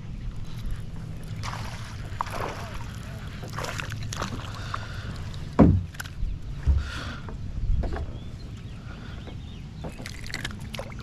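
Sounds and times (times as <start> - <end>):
boat motor hum: 0.0 - 11.0
water splashes and knocks: 0.7 - 8.2, 9.2 - 11.0
loud thump: 5.6 - 5.9.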